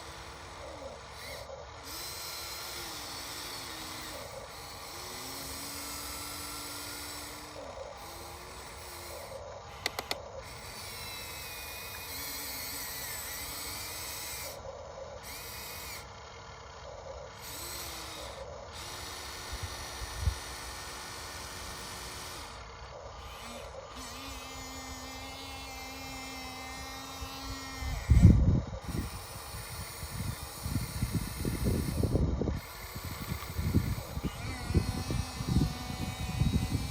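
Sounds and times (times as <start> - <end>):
small electric motor whining: 0.0 - 36.9
clicks: 9.8 - 10.2.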